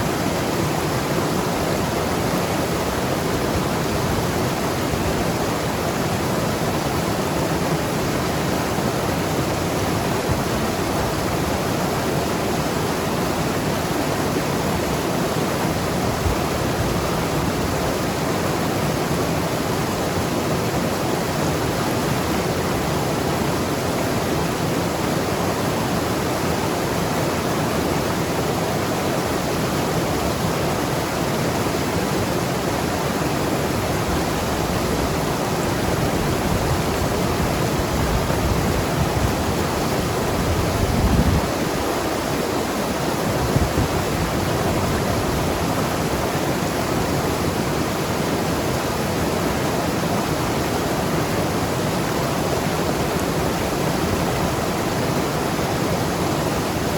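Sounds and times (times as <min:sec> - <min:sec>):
river rushing over rocks: 0:00.0 - 0:56.9.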